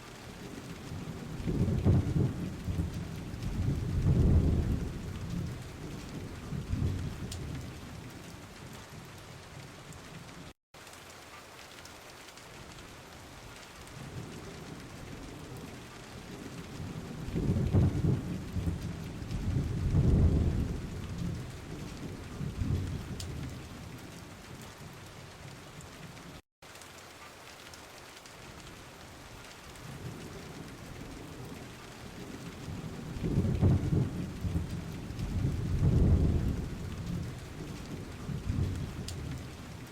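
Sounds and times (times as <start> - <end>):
steady rain: 0.0 - 39.9
rolling thunder: 0.9 - 8.1, 16.3 - 24.0, 29.9 - 39.8.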